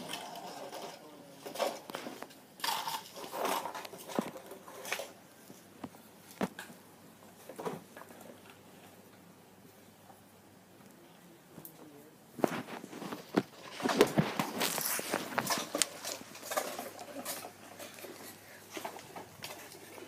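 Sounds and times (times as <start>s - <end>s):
scraping rustles of toys: 0.0s - 5.7s, 12.4s - 20.0s.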